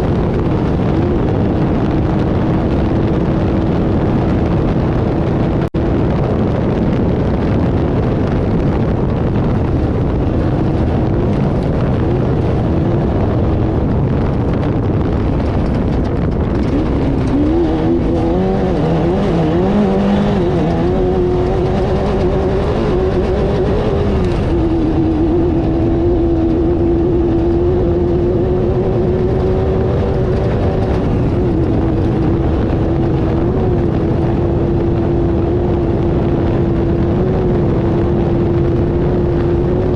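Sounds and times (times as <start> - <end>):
heavy ride rumble: 0.0 - 39.9
race car engine revving: 9.4 - 39.9.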